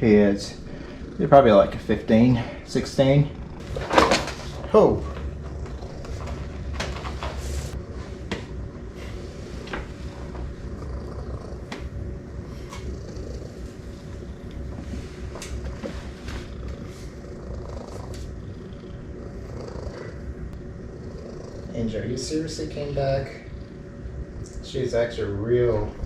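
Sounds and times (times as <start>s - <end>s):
cat purring: 0.0s - 8.1s, 9.0s - 26.0s.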